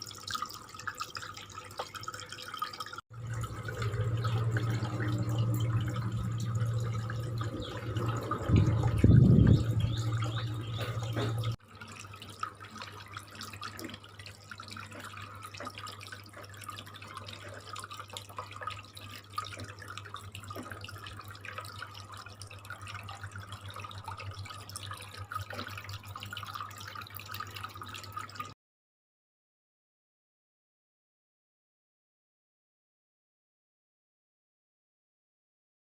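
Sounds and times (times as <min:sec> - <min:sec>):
pump humming: 0:00.0 - 0:28.6
water trickling and dripping: 0:00.0 - 0:28.6.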